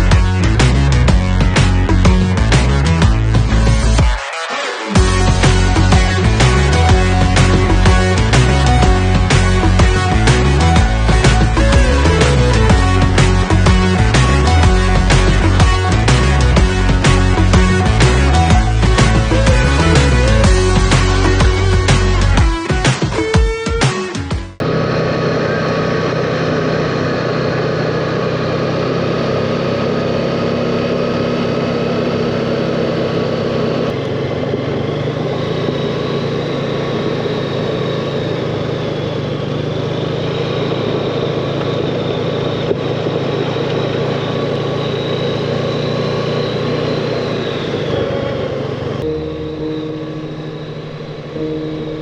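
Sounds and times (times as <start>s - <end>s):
atv engine running: 0.0s - 4.2s, 5.0s - 52.0s.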